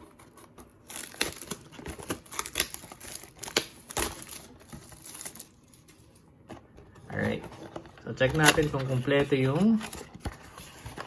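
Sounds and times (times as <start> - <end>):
card packs rustling and scraping: 0.0 - 11.0.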